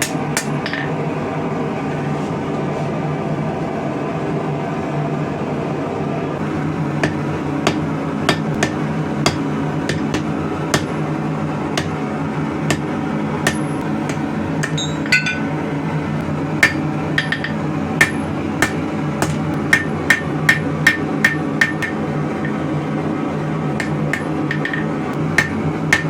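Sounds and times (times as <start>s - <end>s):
hammer striking steel on anvil: 0.0s - 0.9s, 7.0s - 11.0s, 11.8s - 12.0s, 12.7s - 15.6s, 16.6s - 22.6s, 23.8s - 26.0s.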